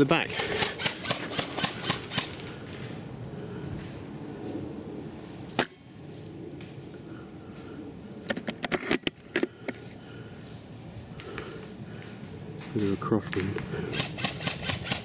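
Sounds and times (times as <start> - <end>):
airsoft rifle shot: 13.9 - 15.0.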